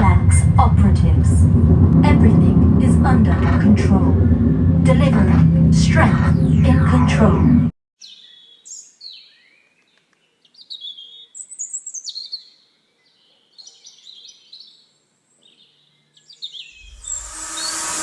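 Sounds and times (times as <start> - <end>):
loud rushing noise: 0.0 - 7.7, 16.8 - 18.0
songbird chirping and trilling: 8.0 - 16.8.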